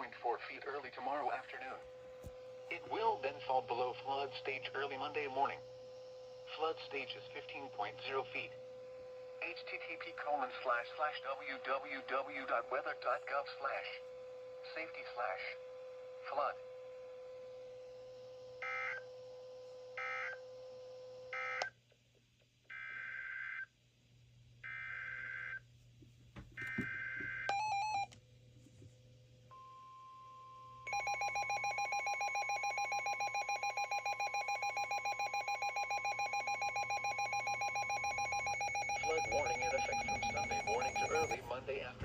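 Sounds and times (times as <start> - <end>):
steady warning tone: 0.0 - 20.7, 29.5 - 42.0
pulsing two-tone attention signal: 30.9 - 41.5.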